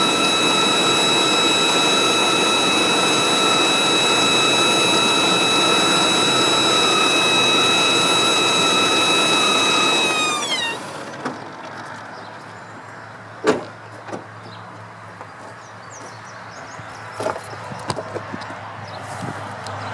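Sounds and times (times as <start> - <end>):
engine running with whine: 0.0 - 19.9.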